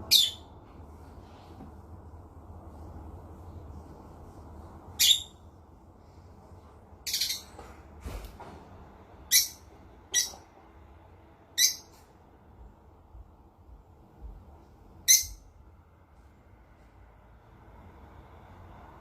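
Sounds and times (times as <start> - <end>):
parrot squawking: 0.0 - 0.5, 5.0 - 5.4, 7.0 - 7.5, 9.3 - 10.4, 11.6 - 11.9, 15.1 - 15.4.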